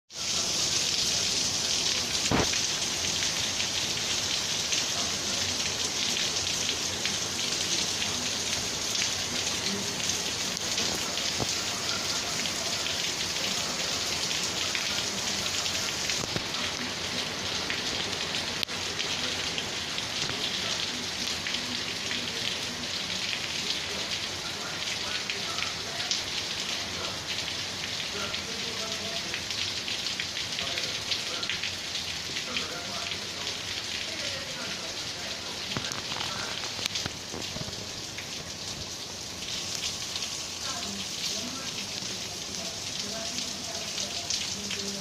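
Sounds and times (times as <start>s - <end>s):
torrential rain: 0.1s - 45.0s.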